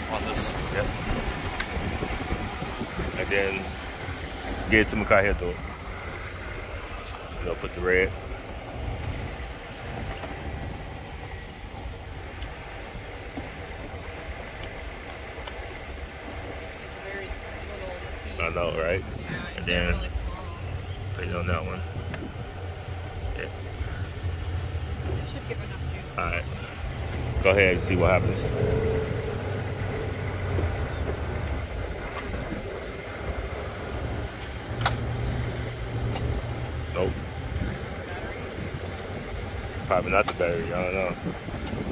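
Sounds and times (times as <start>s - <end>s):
car engine idling: 0.0s - 41.9s.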